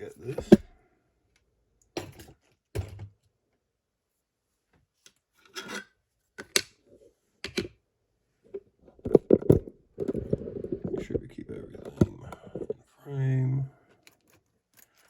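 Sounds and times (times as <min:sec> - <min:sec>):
metal scrapes and clicks of lock: 0:05.4 - 0:06.7.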